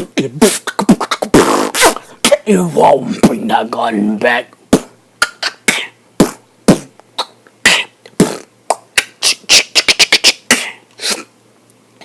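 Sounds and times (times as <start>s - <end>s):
beatboxing: 0.0s - 11.3s.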